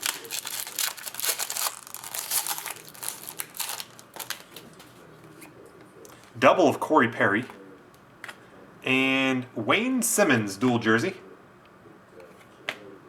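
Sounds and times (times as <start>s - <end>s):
card packaging crinkling: 0.0s - 5.0s.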